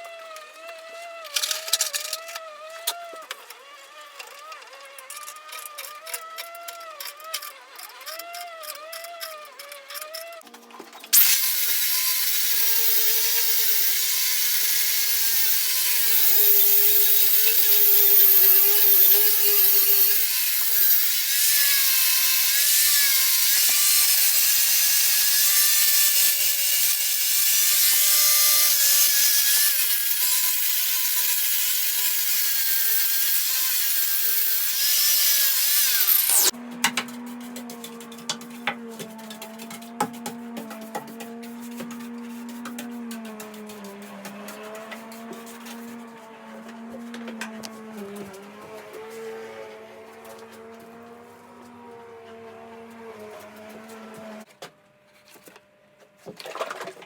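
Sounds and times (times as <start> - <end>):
power tool motor running: 11.1 - 39.5.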